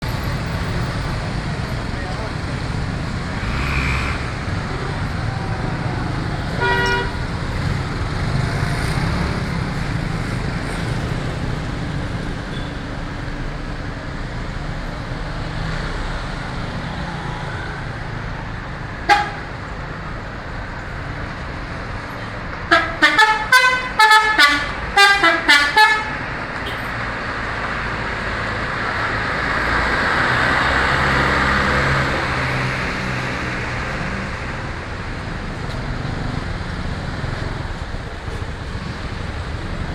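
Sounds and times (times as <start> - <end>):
road traffic noise: 0.0 - 39.9
musical air horn tune: 6.6 - 7.2, 22.7 - 26.1.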